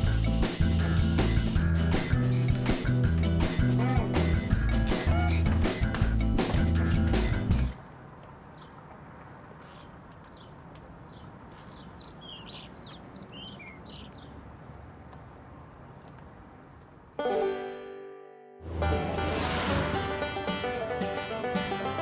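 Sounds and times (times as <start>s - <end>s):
small birds chirping: 6.6s - 8.9s, 9.6s - 14.4s
low outdoor background noise: 7.6s - 18.0s.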